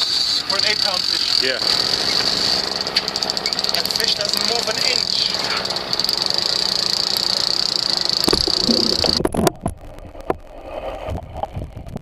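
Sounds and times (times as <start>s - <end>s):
fishing reel drag buzzing: 0.0s - 9.2s.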